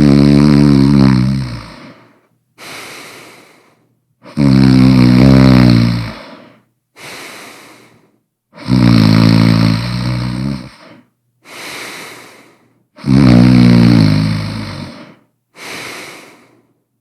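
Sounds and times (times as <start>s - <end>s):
person snoring loudly: 0.0s - 3.0s, 4.2s - 7.6s, 8.6s - 12.4s, 13.0s - 16.5s
faint breath: 1.6s - 4.0s, 6.1s - 8.3s, 10.7s - 13.0s, 14.9s - 16.9s.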